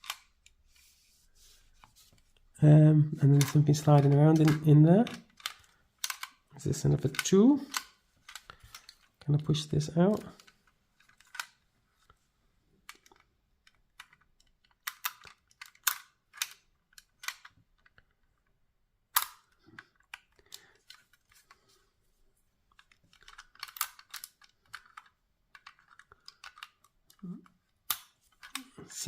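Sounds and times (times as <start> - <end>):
plastic toy pieces clicking: 0.0 - 0.4, 3.3 - 9.2, 10.1 - 11.6, 12.9 - 18.2, 19.1 - 21.6, 22.7 - 28.8.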